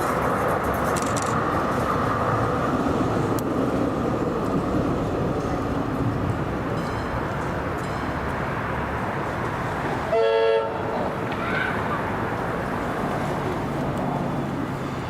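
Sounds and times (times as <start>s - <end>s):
moving train rumble: 0.0s - 15.0s.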